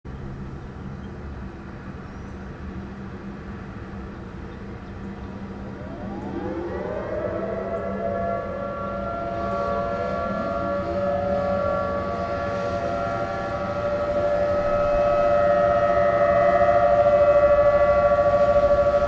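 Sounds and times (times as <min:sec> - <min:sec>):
tornado siren wailing: 0:03.8 - 0:19.0.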